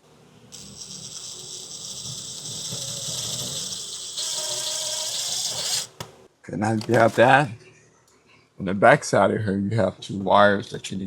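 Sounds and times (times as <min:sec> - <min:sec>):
drill driving screw into wood: 0:01.7 - 0:06.1.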